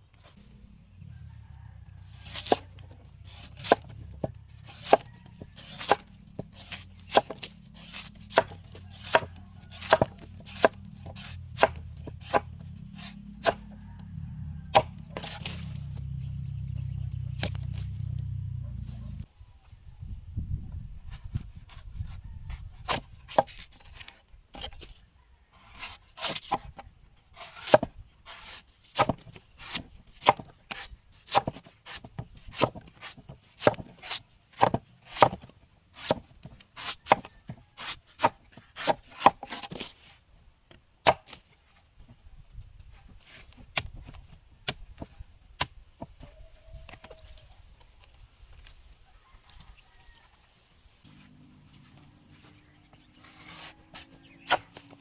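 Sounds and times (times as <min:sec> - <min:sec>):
blade chopping coconut: 0:01.8 - 0:16.2, 0:25.6 - 0:40.0, 0:41.0 - 0:41.5, 0:53.0 - 0:55.0.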